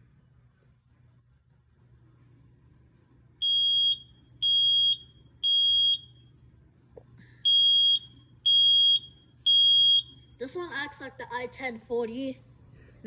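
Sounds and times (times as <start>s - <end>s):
smoke alarm beeping: 3.4s - 6.2s, 7.4s - 10.2s.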